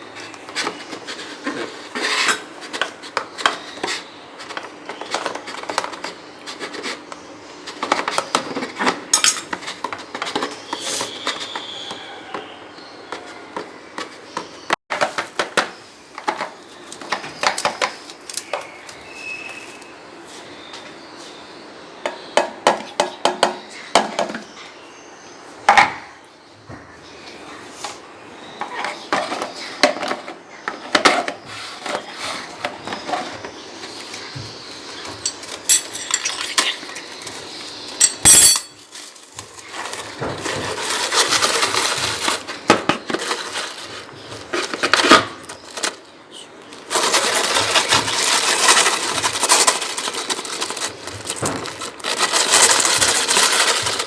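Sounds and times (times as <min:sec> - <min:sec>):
utensils clinking against a dish: 0:07.7 - 0:12.4, 0:34.8 - 0:46.0, 0:46.8 - 0:54.0
crackling crunching: 0:34.8 - 0:54.0.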